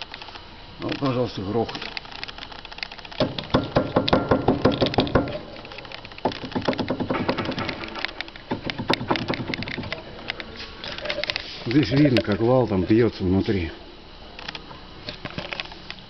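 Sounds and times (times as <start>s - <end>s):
steering rack knocking: 3.2s - 5.5s, 6.3s - 10.0s.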